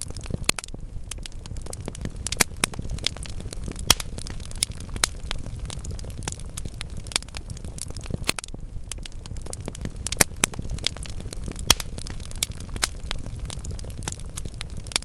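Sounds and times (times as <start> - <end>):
fire popping: 0.0 - 15.0
low rumble of flame: 0.0 - 15.0
wood fire crackling: 0.0 - 15.0.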